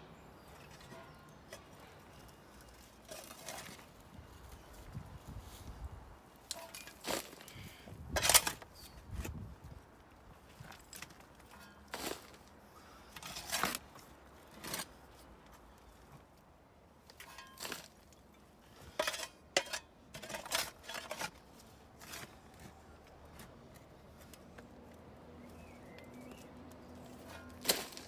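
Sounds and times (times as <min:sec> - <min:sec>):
shovel digging into soil: 0:06.4 - 0:09.5, 0:11.0 - 0:12.4, 0:13.2 - 0:15.0, 0:17.2 - 0:18.0, 0:18.8 - 0:22.7, 0:27.1 - 0:28.0.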